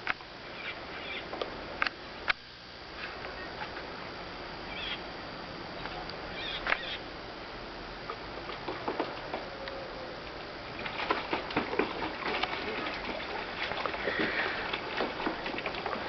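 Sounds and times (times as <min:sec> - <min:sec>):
steady outdoor hiss: 0:00.0 - 0:16.0
high bird calls: 0:00.5 - 0:01.3, 0:04.7 - 0:05.0, 0:06.3 - 0:07.1.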